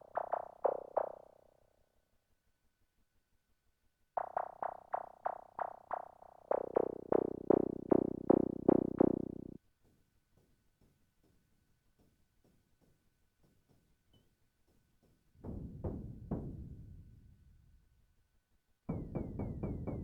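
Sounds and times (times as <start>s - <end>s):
synthesizer plucky sequence: 4.2s - 9.6s.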